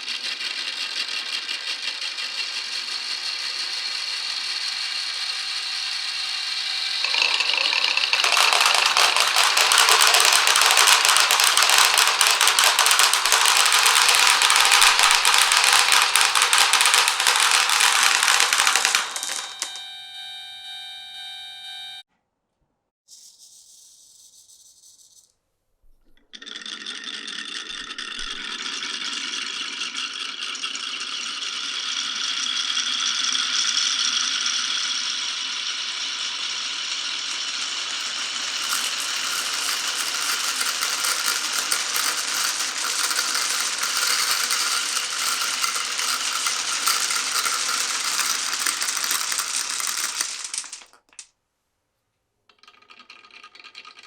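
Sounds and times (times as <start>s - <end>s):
marbles rattling down wooden track: 0.0s - 6.0s, 7.0s - 19.7s, 26.4s - 35.0s, 36.1s - 51.2s.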